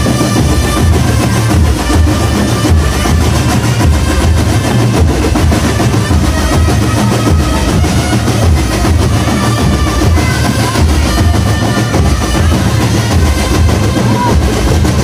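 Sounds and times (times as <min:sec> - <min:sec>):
marching drum band playing: 0:00.0 - 0:15.0.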